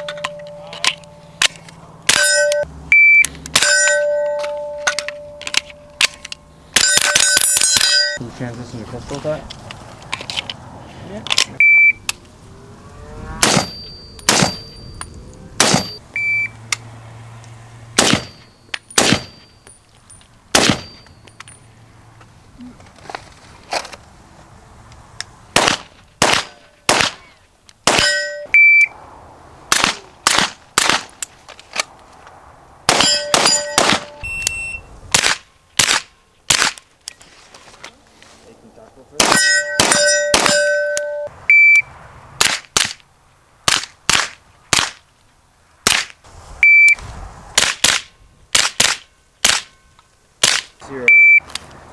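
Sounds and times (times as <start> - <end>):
steel plate ringing clangs: 0.0 - 2.7, 3.5 - 8.2, 13.4 - 16.0, 18.0 - 21.7, 27.9 - 28.6, 32.9 - 34.7, 39.2 - 41.3
shot timer beeps: 2.1 - 6.0, 11.6 - 12.0, 15.8 - 16.5, 28.1 - 28.9, 33.2 - 34.9, 39.4 - 41.8, 46.6 - 47.0, 51.0 - 51.4
gunshots: 13.4 - 14.7, 15.6 - 16.0, 18.0 - 18.4, 19.0 - 19.4, 20.5 - 21.0, 25.6 - 28.4, 29.7 - 31.2, 32.9 - 34.3, 35.1 - 36.8, 39.2 - 41.0.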